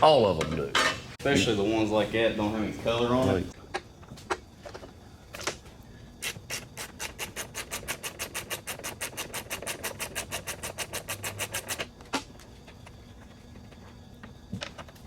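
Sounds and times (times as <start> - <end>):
rapid ratcheting clicks: 6.2 - 11.9.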